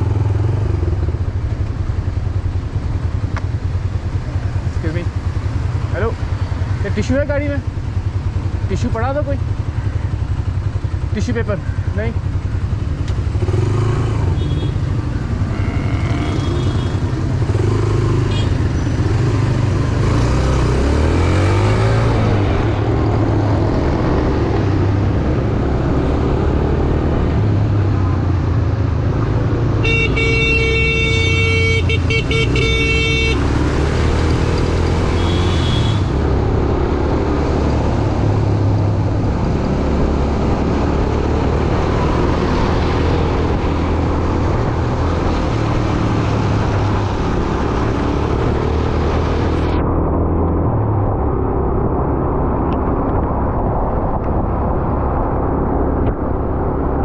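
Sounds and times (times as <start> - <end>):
motorcycle engine revving: 12.0 - 51.7
vehicle horn honk: 29.8 - 33.5, 35.2 - 36.2.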